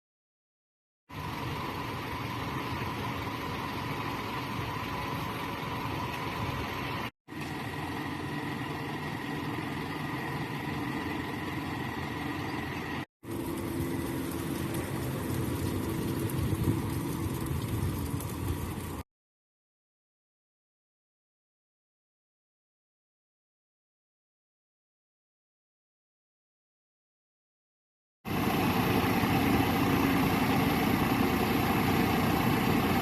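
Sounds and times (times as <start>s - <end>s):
vehicle engine idling: 1.1s - 19.0s, 28.3s - 33.0s.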